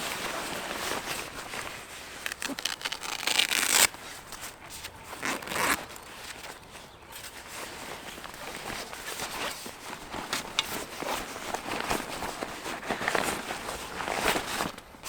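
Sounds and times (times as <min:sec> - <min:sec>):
fabric rustling: 0:00.0 - 0:15.0
zipper being pulled open: 0:02.3 - 0:04.0, 0:05.1 - 0:06.0.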